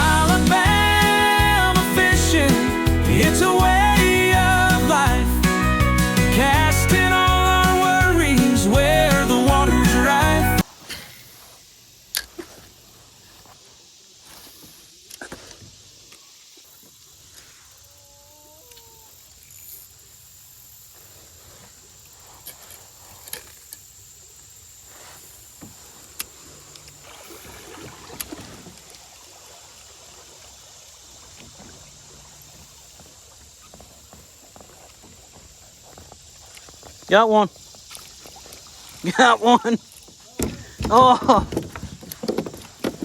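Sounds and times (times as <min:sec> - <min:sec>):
steady high hiss: 0:00.0 - 0:18.0, 0:19.1 - 0:27.5, 0:35.3 - 0:41.3.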